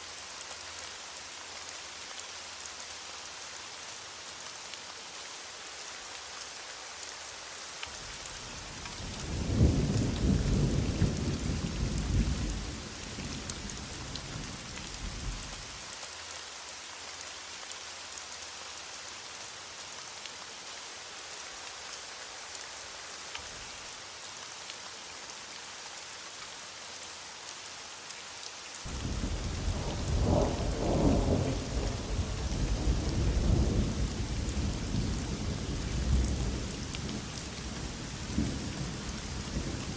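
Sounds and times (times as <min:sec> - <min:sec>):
heavy rain hissing: 0:00.0 - 0:39.9
low rolls of thunder: 0:09.2 - 0:14.4, 0:28.9 - 0:39.9.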